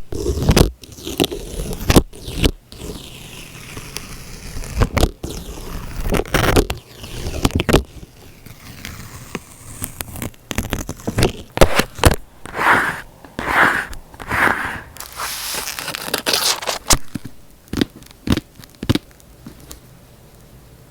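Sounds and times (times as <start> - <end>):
scratchy pen strokes: 11.7 - 15.8
paper hiss: 11.7 - 16.9.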